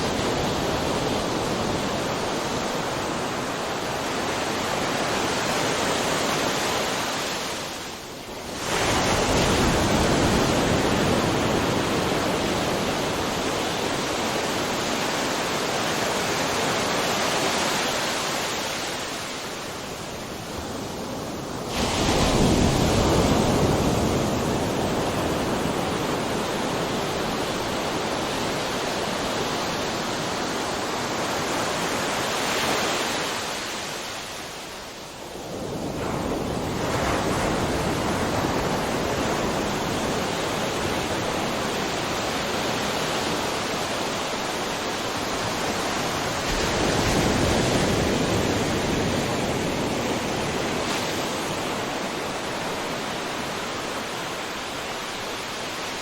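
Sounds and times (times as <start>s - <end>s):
ocean waves crashing: 0.0s - 56.0s.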